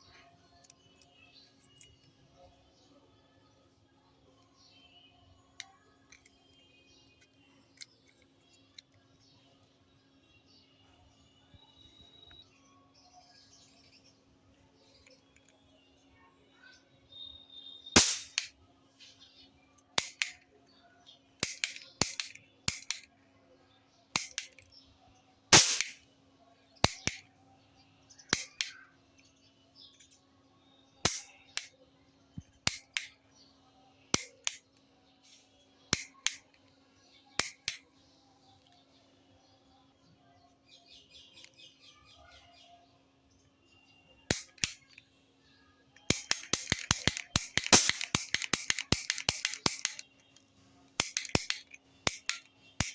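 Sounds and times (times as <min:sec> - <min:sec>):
cap gun pops: 0:18.0 - 0:18.5, 0:20.0 - 0:20.4, 0:21.4 - 0:23.1, 0:24.2 - 0:24.6, 0:25.6 - 0:26.0, 0:26.8 - 0:27.2, 0:28.4 - 0:28.8, 0:31.1 - 0:31.7, 0:32.7 - 0:33.2, 0:34.2 - 0:34.6, 0:36.0 - 0:36.5, 0:37.4 - 0:37.8, 0:44.3 - 0:45.0, 0:46.1 - 0:50.1, 0:51.0 - 0:52.9
faint rapid ticks: 0:21.4 - 0:23.1, 0:46.1 - 0:50.4, 0:51.0 - 0:52.9.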